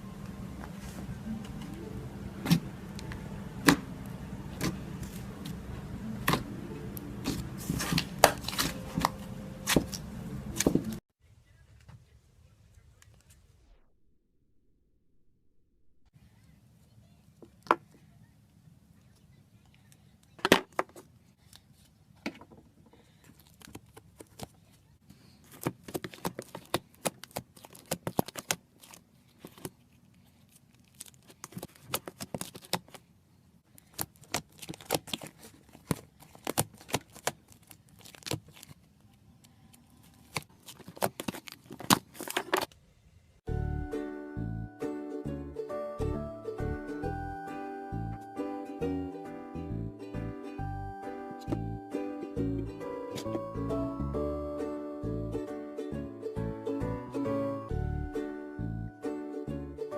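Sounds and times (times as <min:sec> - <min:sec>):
faint low hum: 0:00.0 - 0:13.9, 0:16.1 - 0:20.4.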